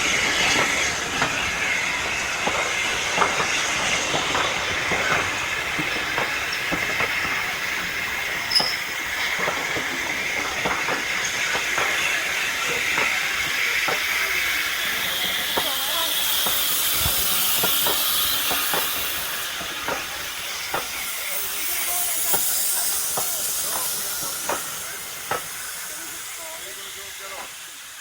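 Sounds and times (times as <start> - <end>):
steam hiss: 0.0 - 28.0
wheels and couplings clanking: 0.1 - 14.2.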